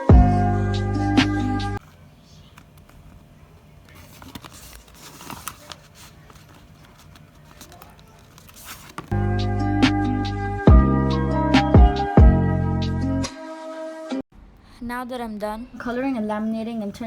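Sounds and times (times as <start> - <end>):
background music: 0.0 - 1.8, 9.2 - 14.2
sticky tape crinkling: 3.8 - 9.2.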